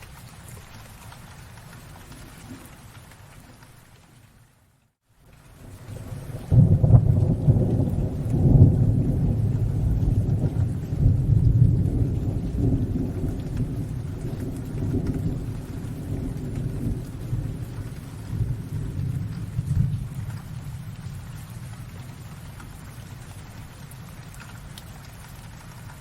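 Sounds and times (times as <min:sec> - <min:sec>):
steady rain: 0:00.0 - 0:26.0
rolling thunder: 0:05.6 - 0:22.9.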